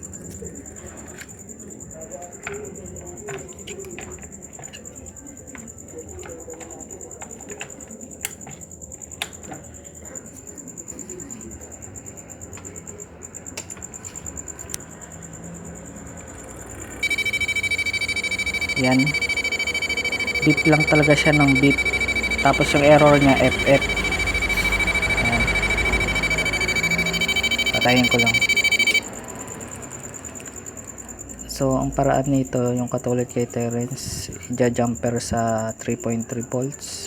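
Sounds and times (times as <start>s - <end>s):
faint high whine: 16.7s - 29.7s
loud continuous beep: 17.0s - 29.8s.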